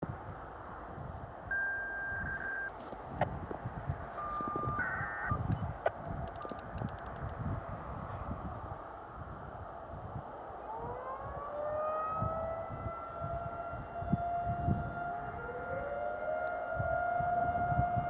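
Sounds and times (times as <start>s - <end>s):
distant warning sirens wailing: 4.0s - 6.6s, 10.2s - 18.0s.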